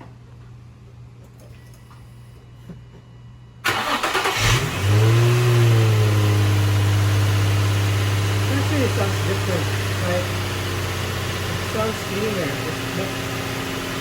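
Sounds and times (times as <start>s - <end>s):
car engine revving and idling: 4.1s - 14.0s.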